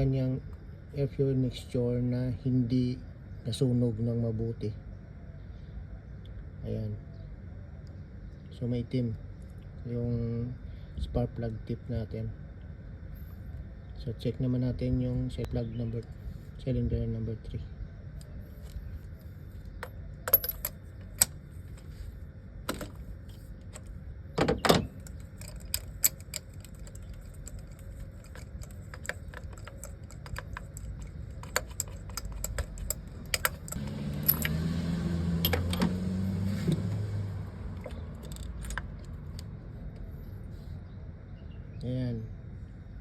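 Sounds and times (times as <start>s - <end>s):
low hum: 0.0s - 43.0s
hand tools clinking on metal: 25.0s - 34.6s.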